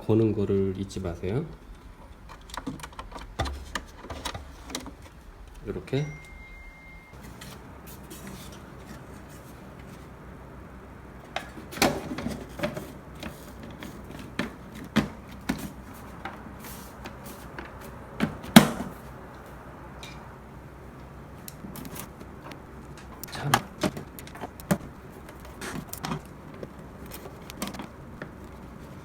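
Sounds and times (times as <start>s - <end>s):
clicks and knocks of machine parts: 1.7s - 5.6s, 21.5s - 28.7s.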